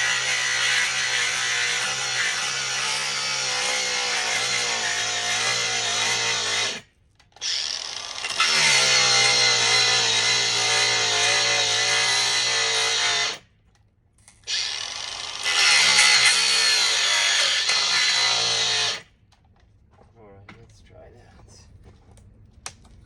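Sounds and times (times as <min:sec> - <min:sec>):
angle grinder cutting plastic sheet: 0:00.0 - 0:06.8, 0:07.4 - 0:13.4, 0:14.5 - 0:19.1.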